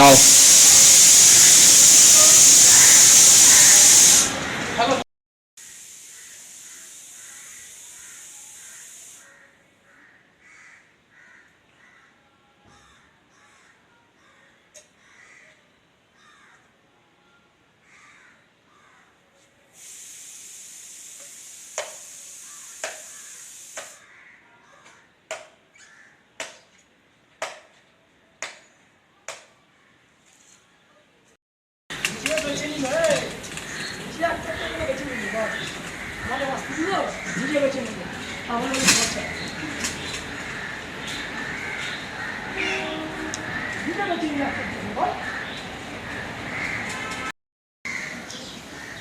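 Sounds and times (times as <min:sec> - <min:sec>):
steady hiss: 0:00.0 - 0:05.0, 0:05.6 - 0:09.4, 0:19.7 - 0:24.0
crows cawing: 0:09.2 - 0:15.6, 0:16.2 - 0:16.7, 0:17.8 - 0:19.2, 0:24.0 - 0:25.2, 0:25.8 - 0:26.3, 0:34.8 - 0:38.2, 0:39.3 - 0:47.1, 0:47.9 - 0:48.2.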